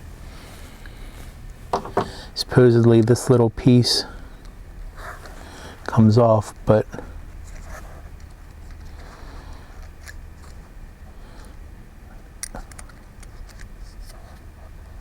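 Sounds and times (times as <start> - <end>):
steady low hum: 0.0 - 15.0.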